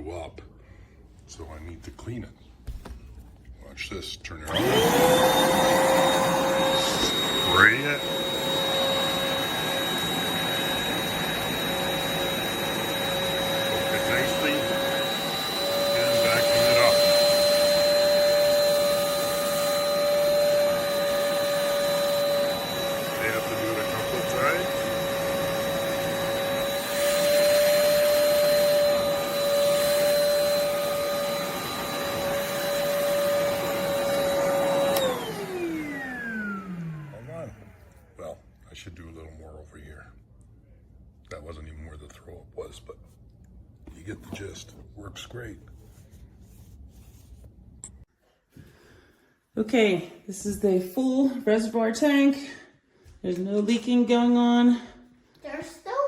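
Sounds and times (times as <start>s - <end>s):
spot cleaner motor whine: 4.5s - 38.4s.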